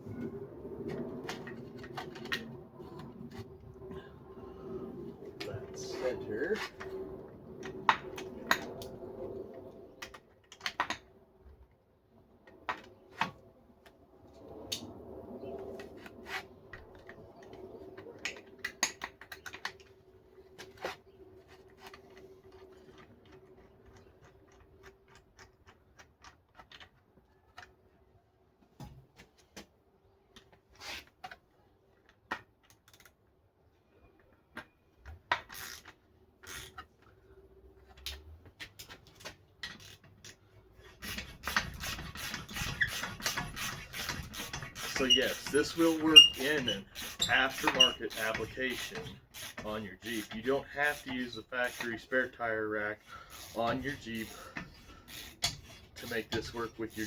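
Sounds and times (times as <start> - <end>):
hand tools clicking and knocking: 38.1 - 52.4, 53.0 - 57.0.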